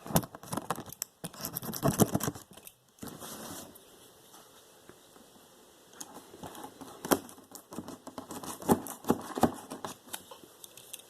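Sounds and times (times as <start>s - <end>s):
cutting and scraping packing tape: 0.2s - 2.6s, 7.8s - 10.0s.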